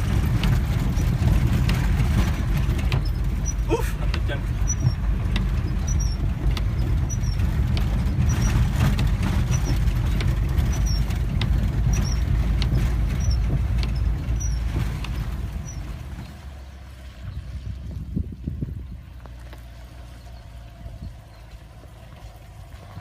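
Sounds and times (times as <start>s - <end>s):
vehicle rumbling over rough ground: 0.0s - 23.0s
short high squeak: 4.6s - 5.0s, 13.2s - 15.9s.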